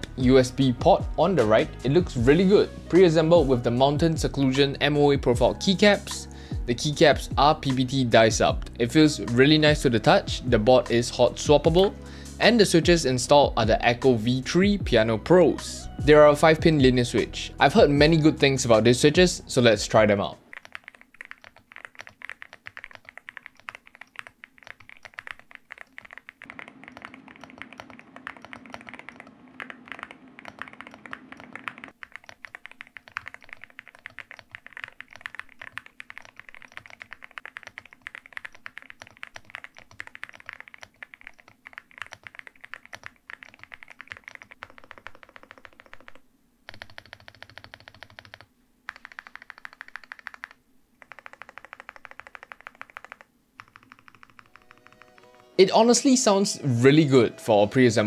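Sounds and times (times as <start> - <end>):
fast mechanical keyboard typing: 20.0 - 55.6.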